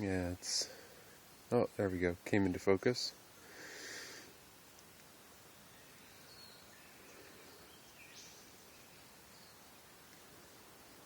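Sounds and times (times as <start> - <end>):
soft rustling hiss: 0.0 - 11.0
faint bird chirps: 5.1 - 11.0.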